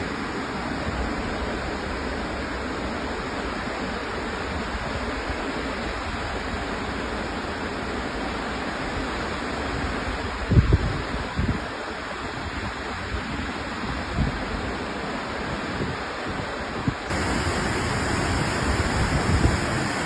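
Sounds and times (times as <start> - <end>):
waterfall roaring: 14.6 - 20.0.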